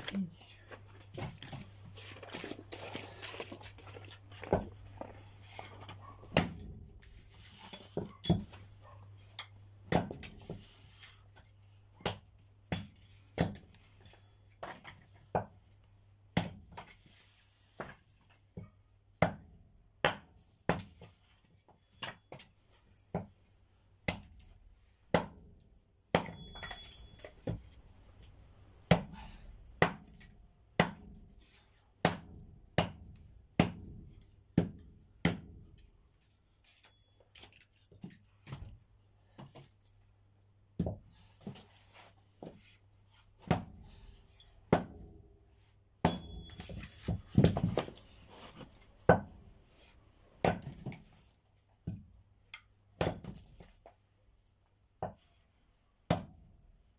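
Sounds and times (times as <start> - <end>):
axe chopping wood: 6.3 - 6.8, 9.9 - 10.4, 12.0 - 13.7, 16.4 - 16.8, 19.2 - 21.0, 25.1 - 25.4, 26.1 - 26.7, 28.8 - 31.2, 32.0 - 34.0, 34.6 - 35.6, 43.4 - 43.8, 44.7 - 45.1, 46.0 - 47.9, 50.4 - 51.0, 53.0 - 53.5, 56.1 - 56.4.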